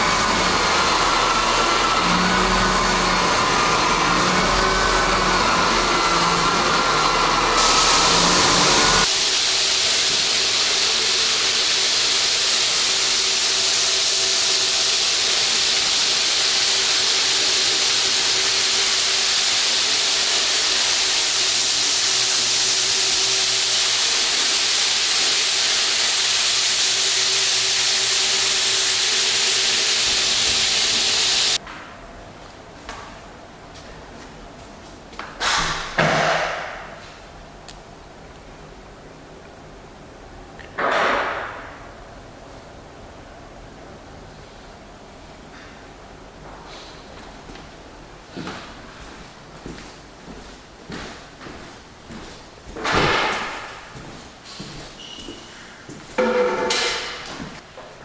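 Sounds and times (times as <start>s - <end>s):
floor sanding machine: 0.0s - 31.6s, 46.6s - 58.0s.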